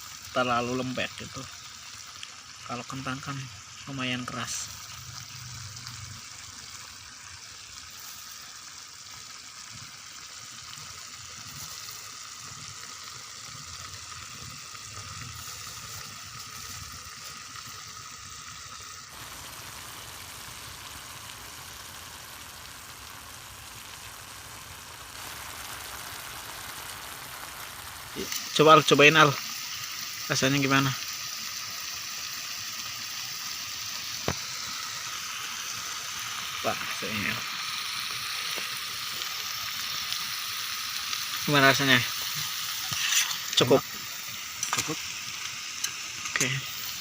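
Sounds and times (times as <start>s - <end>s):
soup bubbling and sizzling: 0.0s - 47.0s.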